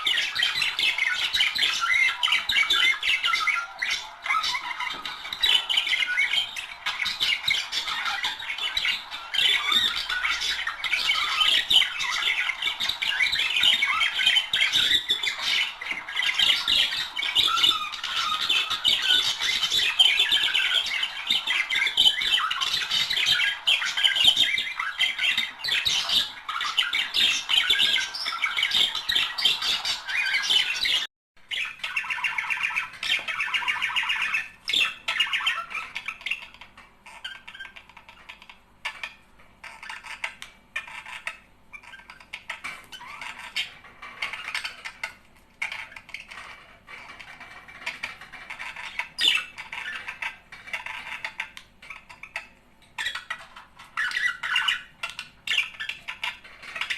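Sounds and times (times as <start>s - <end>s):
budgerigars warbling and chattering: 0.0s - 56.9s.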